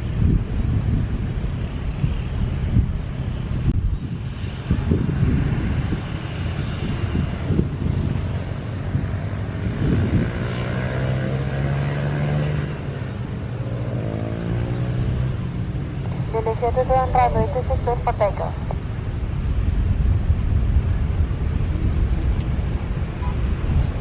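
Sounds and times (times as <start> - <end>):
airliner engine noise: 0.0 - 10.5, 15.3 - 24.0
wind buffeting microphone: 0.0 - 11.2, 18.5 - 24.0.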